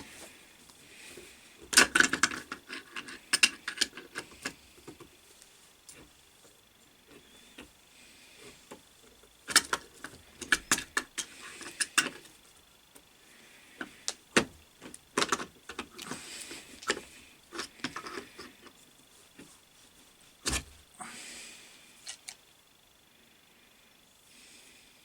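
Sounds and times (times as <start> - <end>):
metal parts clinking and rattling: 1.7 - 4.6.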